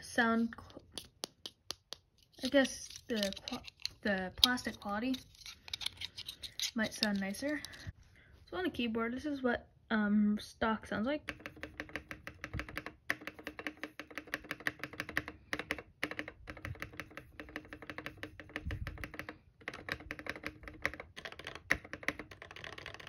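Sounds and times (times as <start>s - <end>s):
mechanical keyboard typing: 11.3s - 23.0s.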